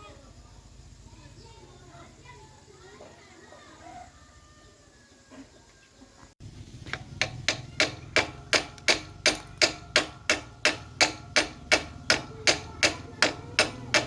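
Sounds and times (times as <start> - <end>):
hammer striking metal: 7.0 - 14.0.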